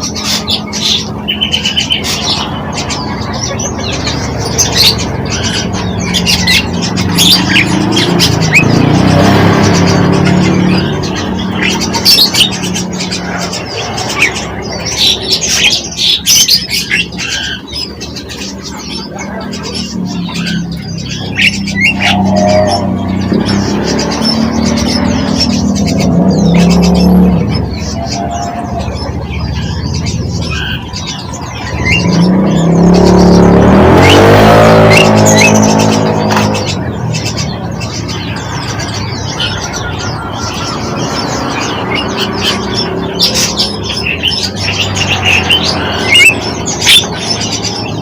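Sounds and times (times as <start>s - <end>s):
small songbirds chirping: 0.0s - 48.0s
vehicle engine passing: 0.0s - 48.0s.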